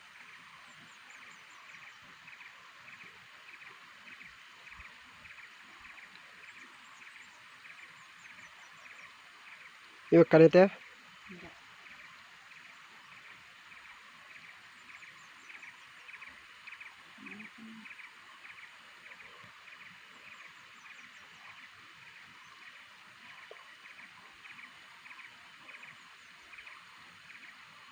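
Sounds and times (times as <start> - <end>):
short pulsed animal calls: 16.1 - 19.3.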